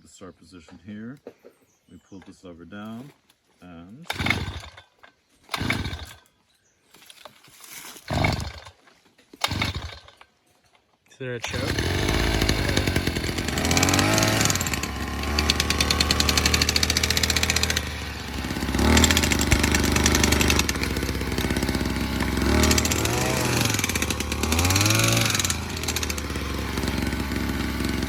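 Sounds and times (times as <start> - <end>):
two-stroke jackhammer engine revving: 4.1 - 4.9, 5.5 - 6.2, 8.1 - 8.8, 9.4 - 10.2, 11.4 - 28.0.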